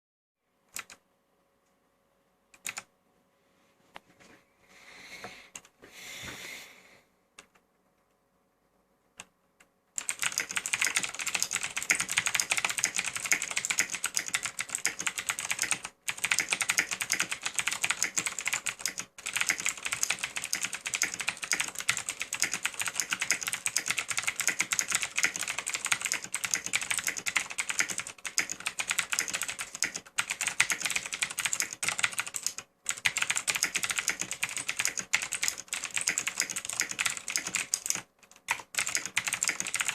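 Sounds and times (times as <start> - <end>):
mechanical keyboard typing: 0.8 - 1.0, 2.6 - 2.9, 10.0 - 39.9.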